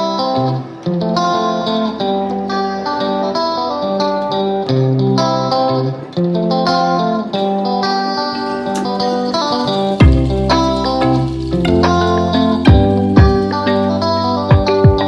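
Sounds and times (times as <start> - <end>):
plucked guitar chords: 0.0 - 15.0
low bass: 9.9 - 14.3.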